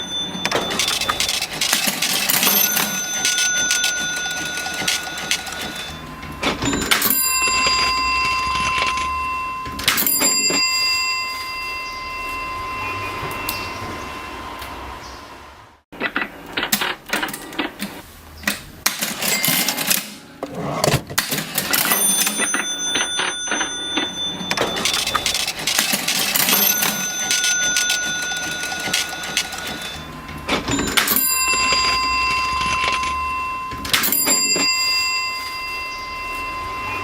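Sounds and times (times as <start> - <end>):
cash register keys clacking: 0.0 - 9.2, 18.8 - 35.3
cash register bell ringing: 0.0 - 14.4, 18.9 - 37.0.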